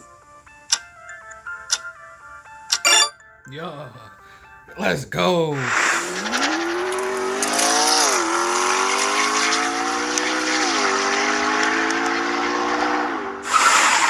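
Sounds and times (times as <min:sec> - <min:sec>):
car engine accelerating hard: 0:05.7 - 0:14.0.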